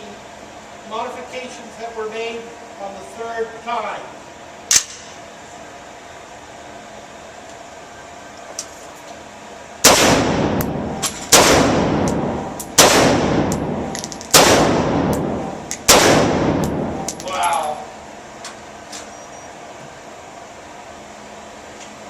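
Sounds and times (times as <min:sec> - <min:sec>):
rifle shots echoing: 0:09.8 - 0:17.2
small metallic clinks: 0:17.1 - 0:17.9.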